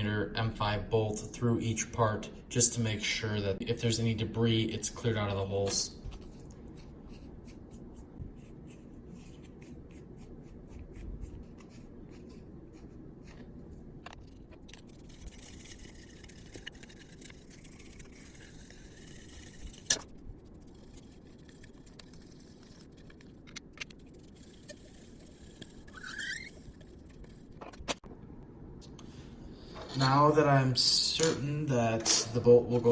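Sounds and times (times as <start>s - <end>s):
brief rising squeak: 25.9s - 26.6s.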